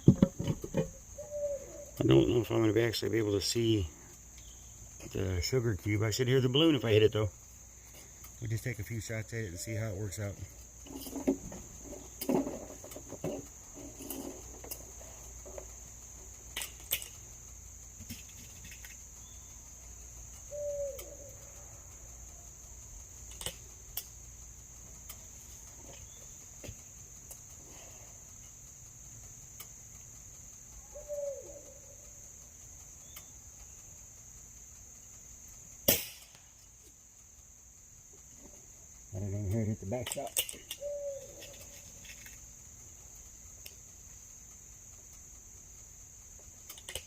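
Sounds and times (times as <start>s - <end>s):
crickets chirring: 0.0s - 47.0s
air rifle shot: 35.9s - 36.4s
small clicks: 38.9s - 47.0s.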